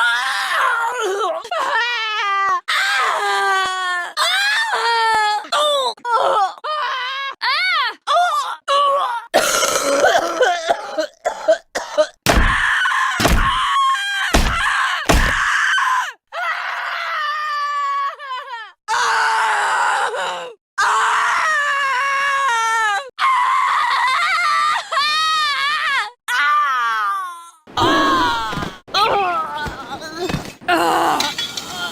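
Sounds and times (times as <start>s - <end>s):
heavy hits: 13.2s - 13.6s, 14.4s - 15.4s.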